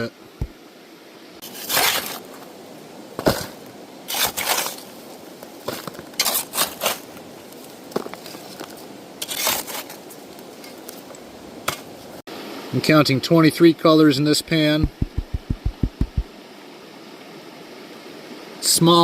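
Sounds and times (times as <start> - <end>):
water and sand swishing in pan: 1.4 - 2.5, 3.3 - 11.1
sharp knock: 14.8 - 16.3.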